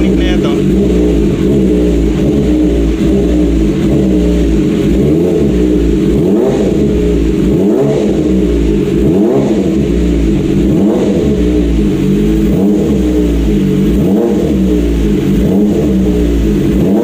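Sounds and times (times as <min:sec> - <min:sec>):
motorcycle engine idling: 0:00.0 - 0:06.2
engine revving: 0:00.0 - 0:17.0.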